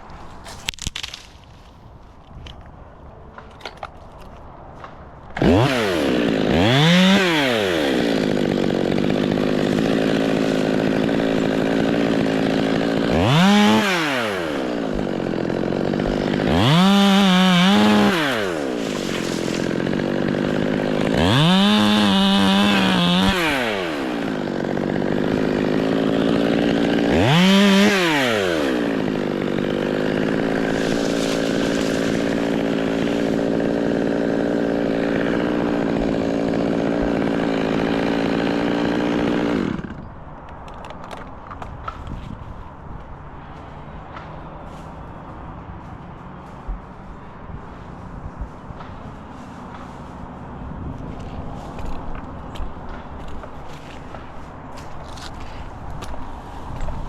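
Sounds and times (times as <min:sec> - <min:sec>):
chainsaw revving: 0:05.4 - 0:40.1.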